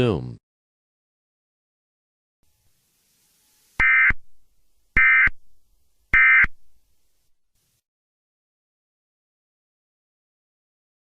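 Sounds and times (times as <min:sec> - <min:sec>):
digital data tone bursts: 0:03.8 - 0:04.2, 0:05.0 - 0:05.4, 0:06.2 - 0:06.5.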